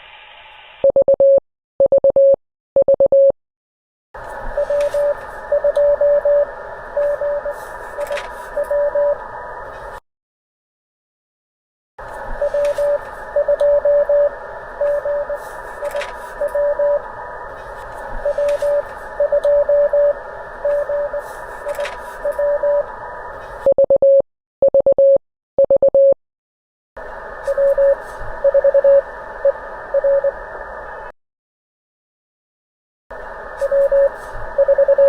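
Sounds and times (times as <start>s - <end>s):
morse code tone: 4.6s - 7.6s, 16.4s - 17.0s, 18.2s - 21.2s, 22.3s - 22.9s, 23.7s - 26.2s, 33.7s - 35.0s.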